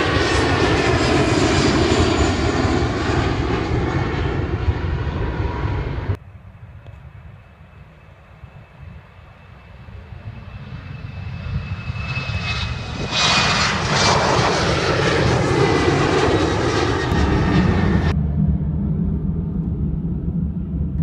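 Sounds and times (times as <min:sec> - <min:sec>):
airliner engines passing: 0:00.0 - 0:21.0
jet engine whine: 0:00.0 - 0:21.0.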